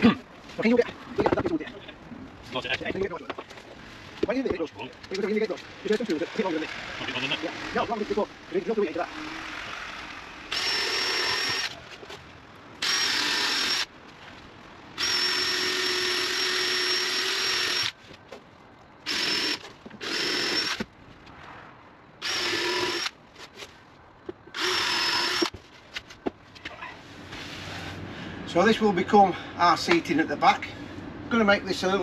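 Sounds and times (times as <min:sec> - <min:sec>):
power drill running: 0:05.8 - 0:11.8, 0:12.8 - 0:13.9, 0:15.0 - 0:18.0, 0:19.0 - 0:20.8, 0:22.2 - 0:23.2, 0:24.5 - 0:25.5.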